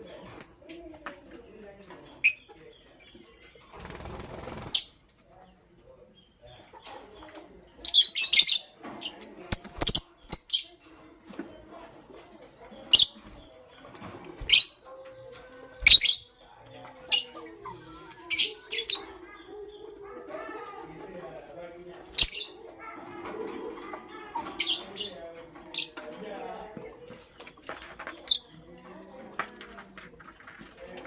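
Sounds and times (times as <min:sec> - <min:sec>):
faint low chatter: 0:00.0 - 0:31.0
high-pitched bird chirps: 0:07.3 - 0:26.0.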